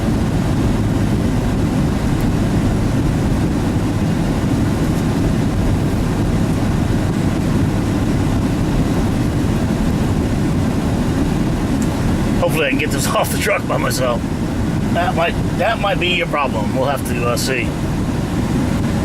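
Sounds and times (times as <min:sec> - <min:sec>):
truck engine and road rumble: 0:00.0 - 0:19.0.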